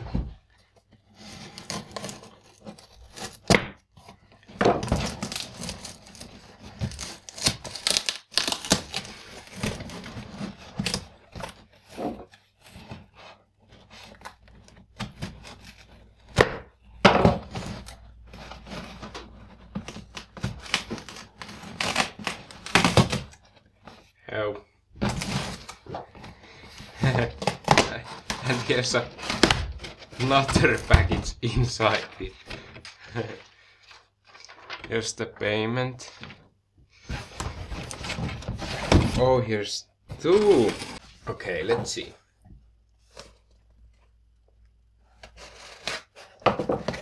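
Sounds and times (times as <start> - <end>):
tape and cardboard tearing: 1.2 - 3.8, 4.8 - 13.2, 17.5 - 23.4, 27.0 - 31.0, 45.2 - 47.0
cardboard flaps scraping: 25.0 - 35.1, 37.0 - 39.4, 40.1 - 42.1.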